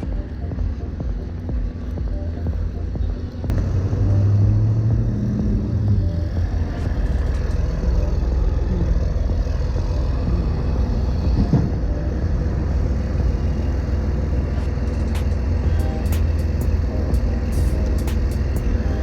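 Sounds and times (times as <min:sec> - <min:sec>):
city street rumble: 0:00.0 - 0:19.0.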